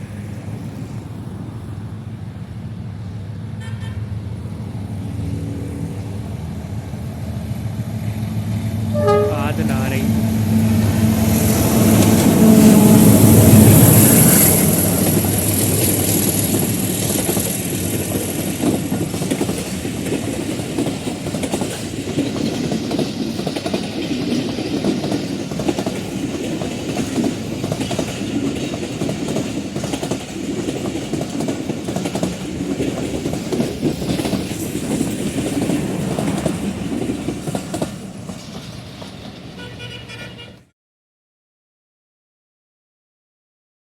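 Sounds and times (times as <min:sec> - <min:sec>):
locomotive engine hum: 0:00.0 - 0:21.5
train wheels clattering on rails: 0:10.2 - 0:39.9.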